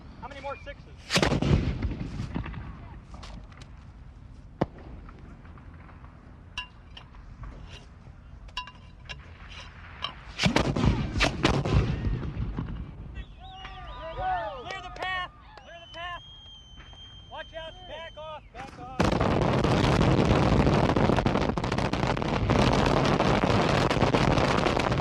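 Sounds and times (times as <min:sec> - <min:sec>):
rifle shots echoing: 0:01.1 - 0:02.9, 0:09.2 - 0:13.0.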